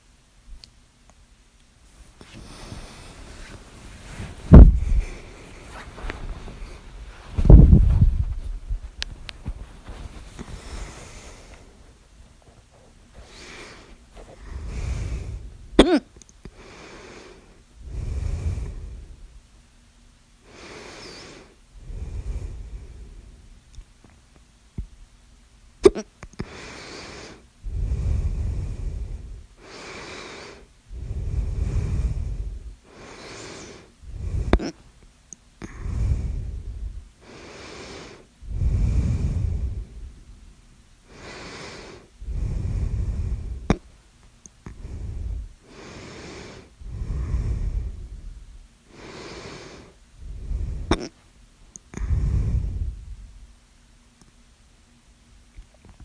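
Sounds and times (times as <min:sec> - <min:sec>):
person breathing heavily: 0:02.2 - 0:19.4, 0:20.4 - 0:23.4, 0:26.4 - 0:34.8, 0:35.6 - 0:40.4, 0:41.1 - 0:43.9, 0:44.6 - 0:51.2, 0:51.9 - 0:53.4
person hiccuping: 0:15.8 - 0:16.1.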